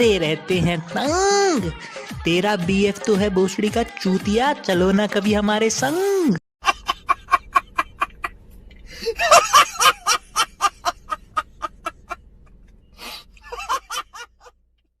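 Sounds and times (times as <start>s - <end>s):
person cackling with laughter: 6.6s - 12.2s, 13.0s - 14.5s.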